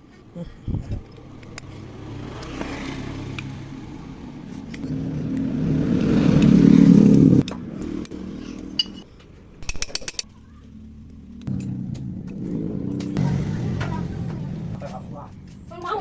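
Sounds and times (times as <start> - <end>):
motorcycle engine revving: 1.0 - 9.0, 10.6 - 15.7.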